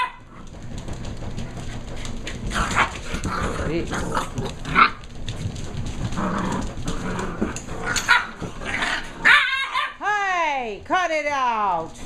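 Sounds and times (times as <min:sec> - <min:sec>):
puppies barking: 0:00.0 - 0:00.6, 0:02.3 - 0:10.0
puppies growling: 0:00.0 - 0:10.0
puppies scuffling: 0:00.0 - 0:10.0
puppy yelping: 0:07.8 - 0:10.0.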